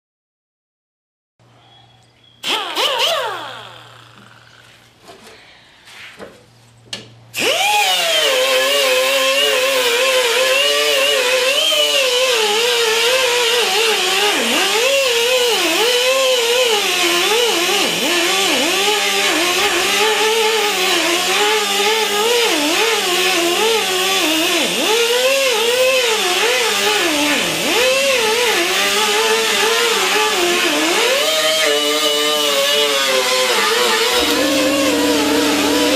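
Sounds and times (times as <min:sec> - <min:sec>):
power grinder grinding metal: 0:07.4 - 0:35.9.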